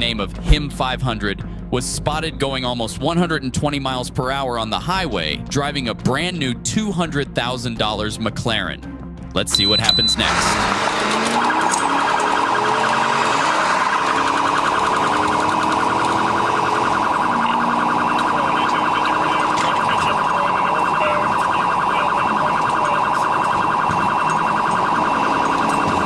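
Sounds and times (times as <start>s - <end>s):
police siren warbling: 9.6s - 26.0s.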